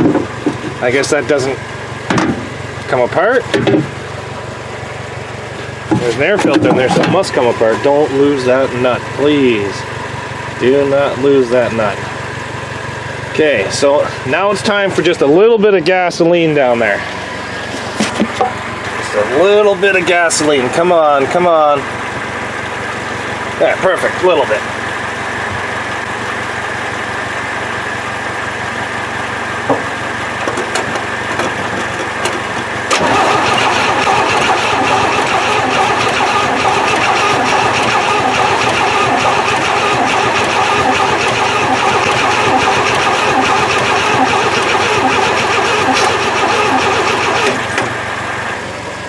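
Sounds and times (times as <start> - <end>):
steady engine-like running: 0.0 - 49.0
truck engine cranking on starter: 30.4 - 48.6.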